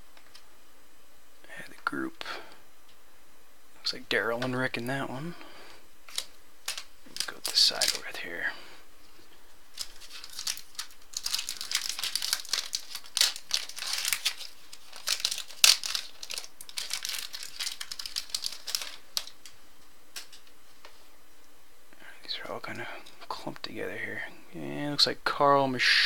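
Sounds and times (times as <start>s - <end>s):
card wrapper crinkling: 6.0s - 8.4s, 9.1s - 20.6s.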